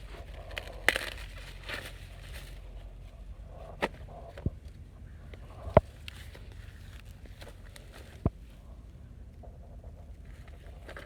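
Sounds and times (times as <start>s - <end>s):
corn plants rustling: 0.0s - 4.4s, 5.3s - 8.7s.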